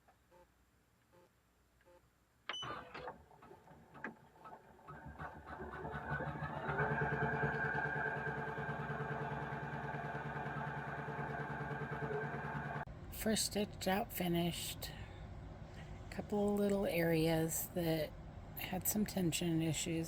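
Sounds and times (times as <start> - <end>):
embroidery machine running: 3.1 - 13.2.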